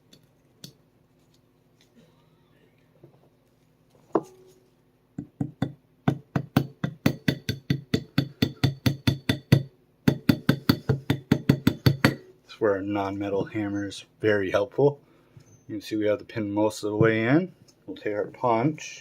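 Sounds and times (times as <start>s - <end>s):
hammer tapping a pin: 5.2s - 12.3s.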